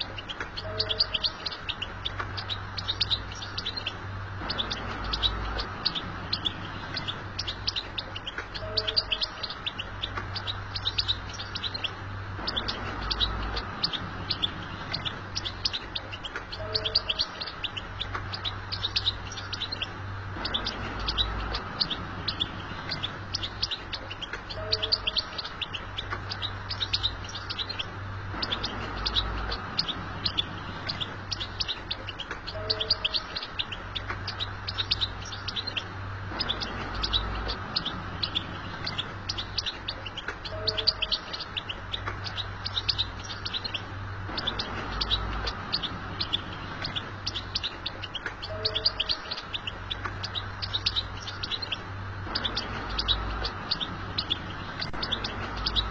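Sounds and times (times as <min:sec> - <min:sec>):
finch twittering chirps: 0:00.0 - 0:55.9.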